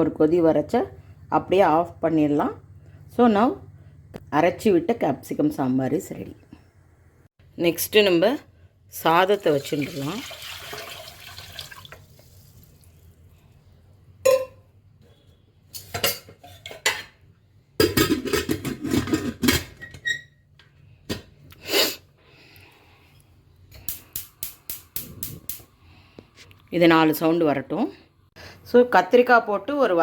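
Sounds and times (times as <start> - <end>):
metal pots and utensils clattering: 14.2 - 14.7, 15.7 - 20.3.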